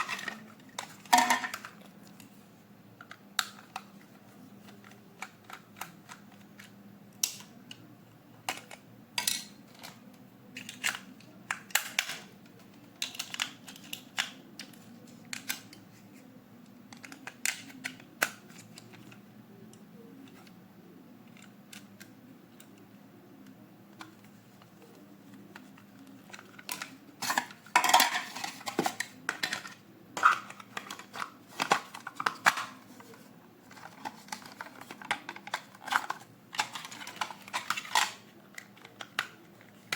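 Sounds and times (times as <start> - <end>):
plastic toy parts rattling: 0.0 - 1.8, 10.6 - 15.8, 25.5 - 39.9
faint steady hum: 0.0 - 39.9.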